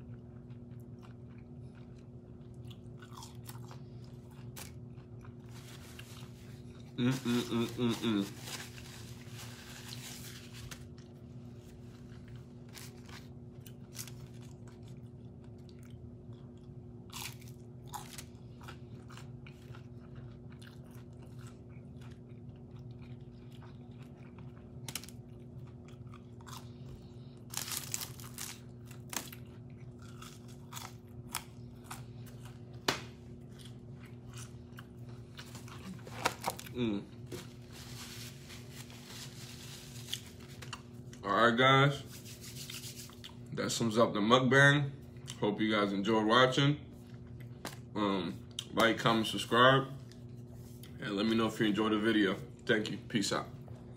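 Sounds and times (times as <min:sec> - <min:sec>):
person chewing food: 0:00.0 - 0:09.3, 0:10.7 - 0:41.2, 0:42.2 - 0:43.6, 0:45.0 - 0:45.4, 0:46.9 - 0:48.7, 0:50.0 - 0:51.0
steady low hum: 0:00.0 - 0:53.9
crisp crunches: 0:04.4 - 0:15.0, 0:27.4 - 0:32.6.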